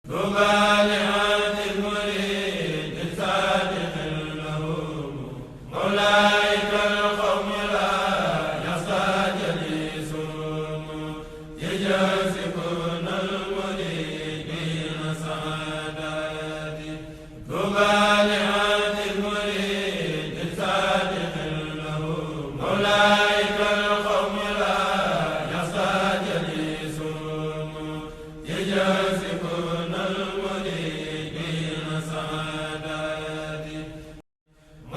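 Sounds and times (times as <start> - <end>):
voices chanting in unison: 0.1 - 34.9.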